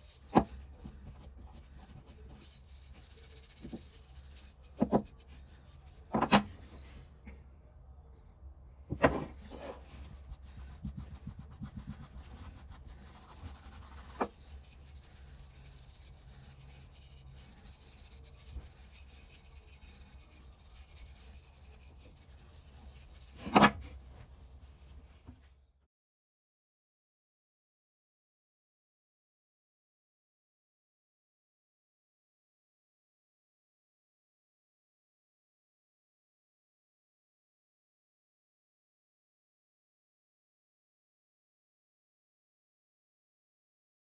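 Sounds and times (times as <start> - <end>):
faint rubbing: 0.0 - 7.1, 8.9 - 25.3.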